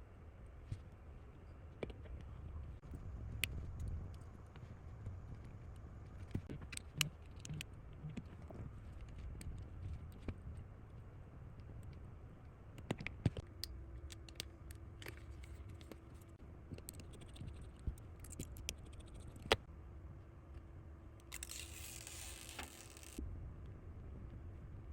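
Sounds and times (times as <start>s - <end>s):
tools clicking on phone parts: 12.8s - 19.6s.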